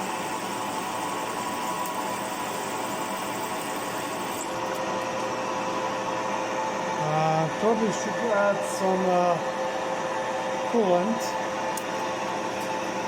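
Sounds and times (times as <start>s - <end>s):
machine spindle drilling metal: 0.0s - 4.8s.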